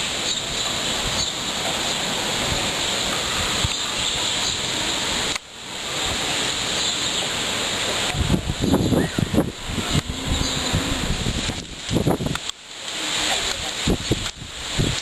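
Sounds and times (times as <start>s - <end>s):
storm wind gusting: 7.4s - 12.5s, 13.8s - 15.0s
wind buffeting microphone: 8.0s - 12.5s, 13.6s - 15.0s.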